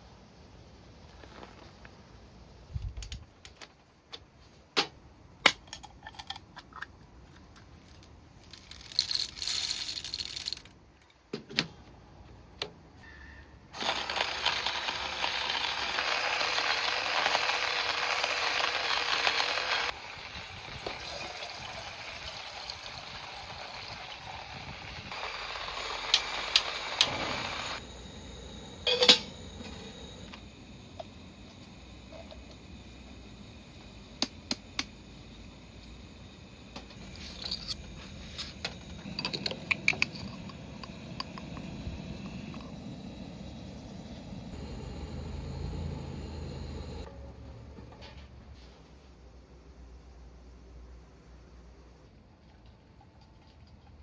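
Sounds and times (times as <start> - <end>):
steady hiss: 13.8 - 47.1
sharp ringing clink: 28.8 - 29.4.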